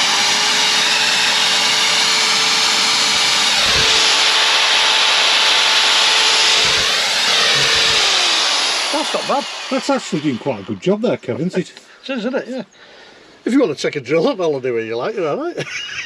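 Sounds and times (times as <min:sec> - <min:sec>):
electric drill running: 0:00.0 - 0:10.9.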